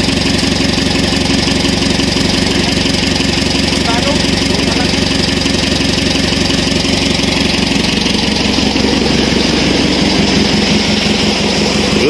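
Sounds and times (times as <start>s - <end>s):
diesel engine idling: 0.0s - 12.0s.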